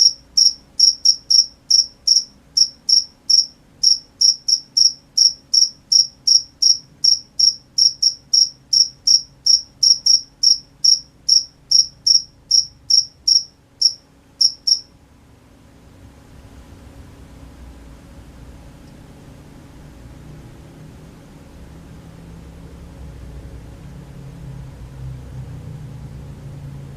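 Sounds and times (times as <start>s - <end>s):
cricket chirping: 0.0s - 14.9s.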